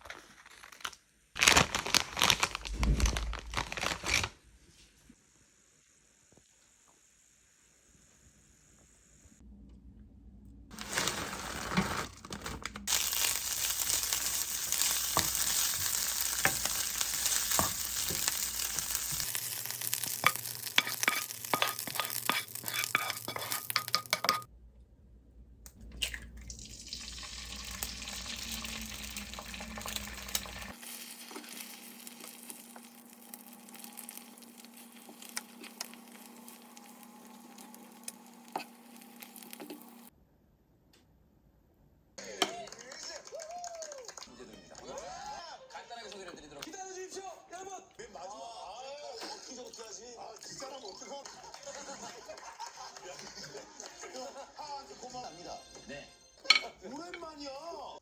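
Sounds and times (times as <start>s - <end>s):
food sizzling in frying pan: 5.4s - 9.3s, 12.9s - 24.5s, 26.5s - 40.1s
stirring clicks and scrapes: 20.2s - 24.5s.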